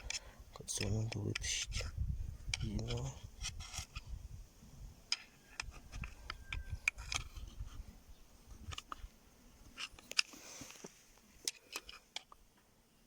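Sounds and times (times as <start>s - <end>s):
metal tool clicks and scrapes: 2.5s - 4.0s, 5.1s - 7.7s, 9.7s - 12.4s.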